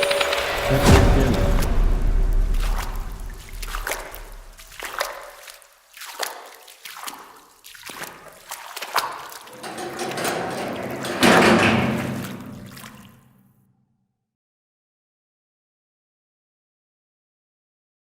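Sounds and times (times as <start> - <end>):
door creaking: 9.6 - 12.8.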